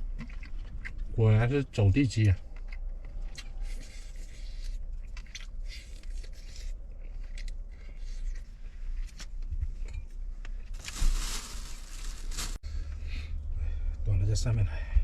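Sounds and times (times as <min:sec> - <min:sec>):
person chewing food: 0:00.0 - 0:01.2, 0:02.3 - 0:10.8
low hum: 0:06.6 - 0:15.0.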